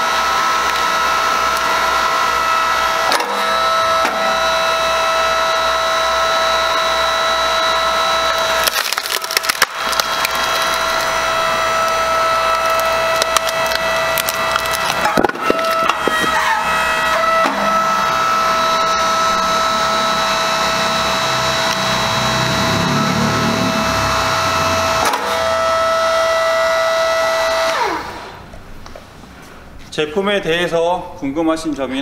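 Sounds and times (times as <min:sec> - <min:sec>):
log splitter motor humming: 0:00.0 - 0:29.0
wood cracking as it splits: 0:08.3 - 0:16.6.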